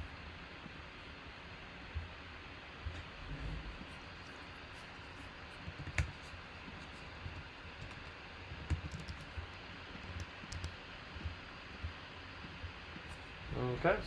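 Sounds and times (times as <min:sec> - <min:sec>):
typing on computer keyboard: 0:05.6 - 0:06.2, 0:07.2 - 0:10.8.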